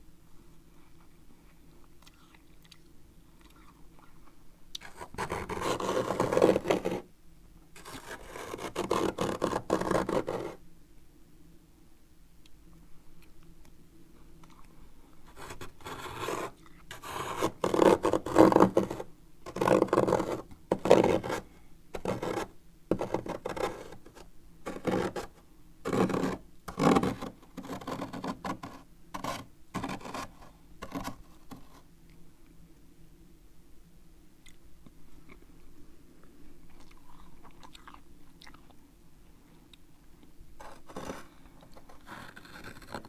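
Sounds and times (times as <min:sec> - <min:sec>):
spoon scraping frost: 0:25.9 - 0:31.8, 0:40.6 - 0:43.0.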